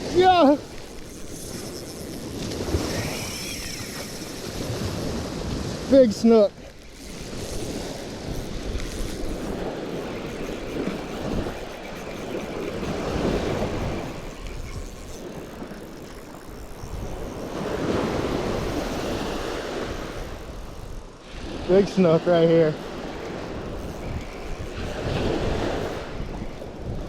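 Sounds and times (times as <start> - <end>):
surf washing up beach: 0.0 - 0.8, 2.2 - 6.6, 17.4 - 27.0
wind buffeting microphone: 0.0 - 21.8, 22.6 - 27.0.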